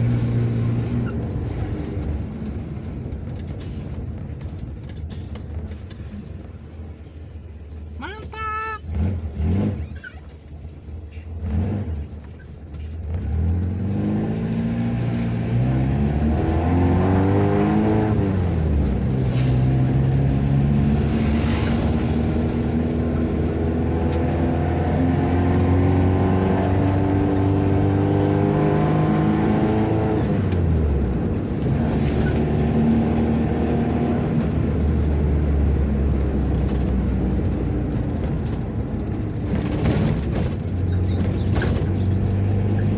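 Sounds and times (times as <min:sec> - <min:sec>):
car engine accelerating: 0:00.0 - 0:04.8, 0:07.6 - 0:42.9
engine knocks: 0:00.0 - 0:07.1, 0:34.3 - 0:42.9.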